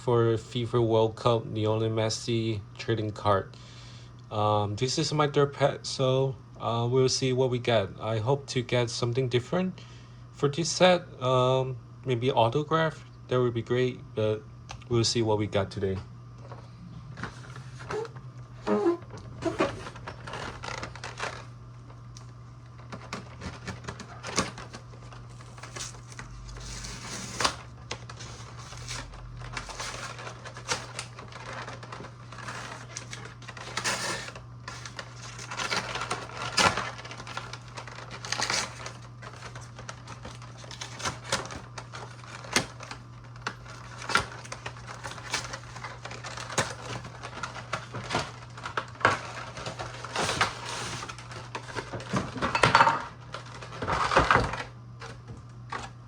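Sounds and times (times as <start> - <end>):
steady low hum: 0.0 - 56.0
wrapper crackling and crinkling: 17.2 - 56.0.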